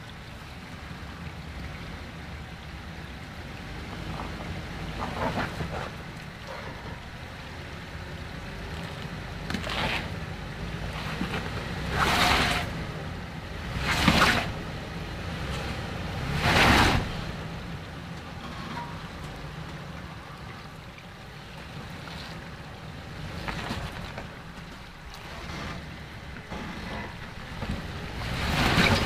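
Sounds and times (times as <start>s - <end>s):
low engine rumble: 0.0s - 29.0s
tyres crunching over rocks: 8.5s - 12.7s, 21.9s - 29.0s.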